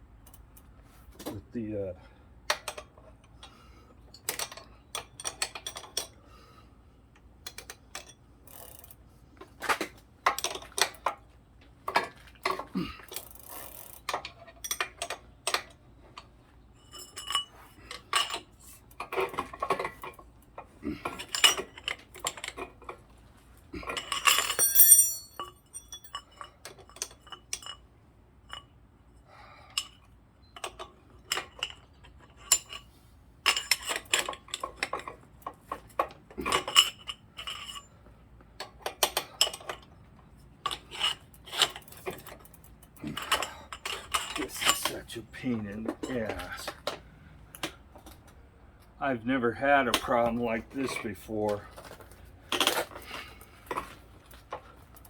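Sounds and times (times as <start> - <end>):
metal tools clinking on pedal: 4.1 - 6.2, 7.4 - 11.3, 11.9 - 28.8, 29.4 - 48.4, 49.8 - 55.0
rattling: 24.3 - 25.5.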